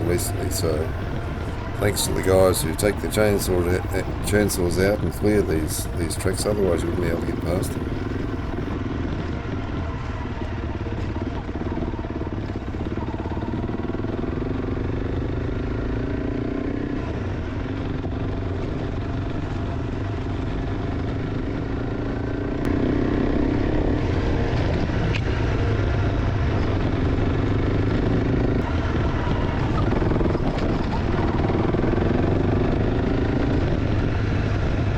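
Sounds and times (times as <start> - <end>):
motorcycle engine running: 0.0 - 8.7.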